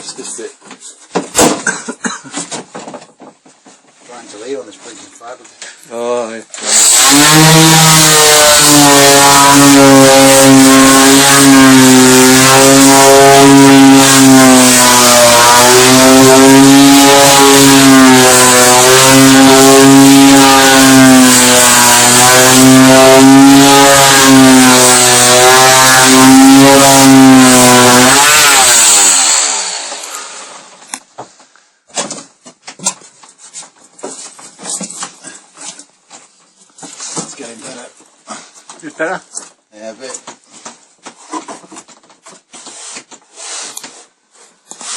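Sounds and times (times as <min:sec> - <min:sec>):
electric power tool running: 0:06.5 - 0:30.8.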